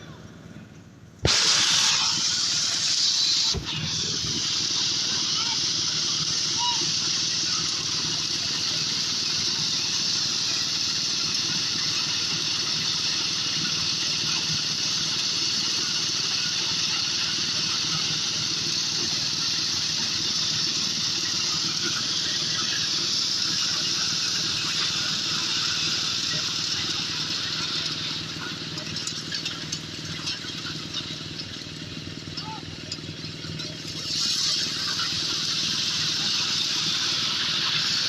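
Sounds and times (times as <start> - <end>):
engine hum: 0.0 - 38.0
loud even hiss: 1.2 - 29.3, 33.9 - 38.0.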